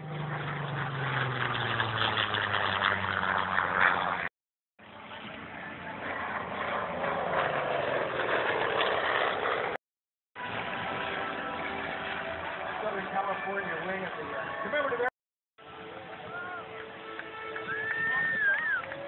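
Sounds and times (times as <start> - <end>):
propeller plane flying past: 0.0 - 9.8, 10.4 - 15.1.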